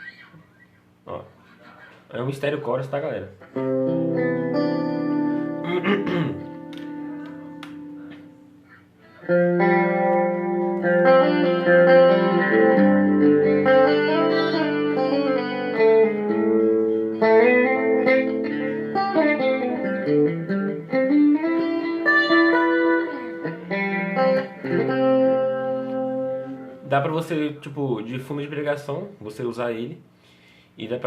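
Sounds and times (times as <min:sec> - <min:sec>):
electric guitar with chorus effect: 0:03.4 - 0:27.4.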